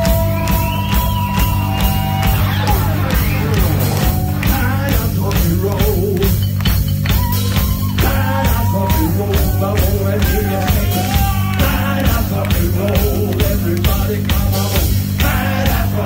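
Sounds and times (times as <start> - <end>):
live rock band playing: 0.0 - 16.0
person singing: 2.3 - 6.4, 7.9 - 16.0.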